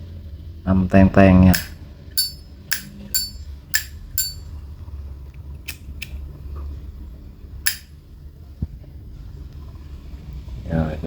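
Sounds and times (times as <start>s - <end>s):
lighter lid clicking open and shut: 7.7s - 7.9s.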